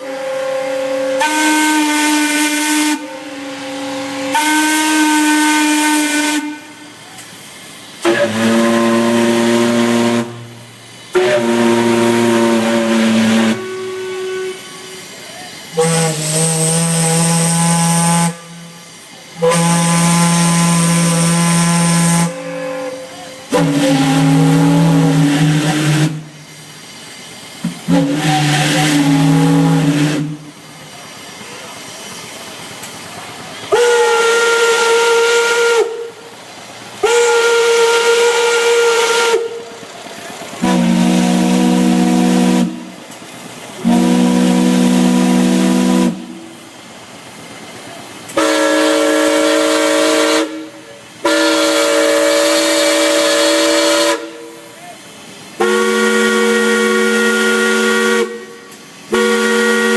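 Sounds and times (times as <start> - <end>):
whistle blasts: 11.1 - 18.8, 55.6 - 59.9.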